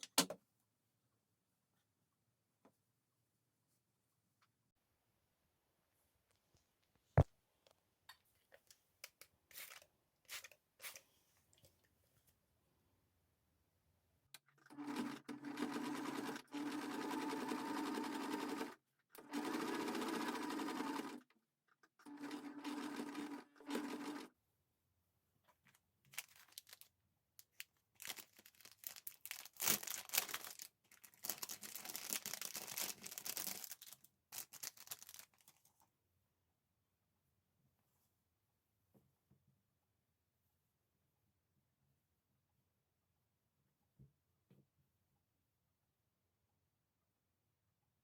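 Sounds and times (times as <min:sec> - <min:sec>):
sewing machine stitching: 0:14.4 - 0:21.3, 0:21.9 - 0:24.3.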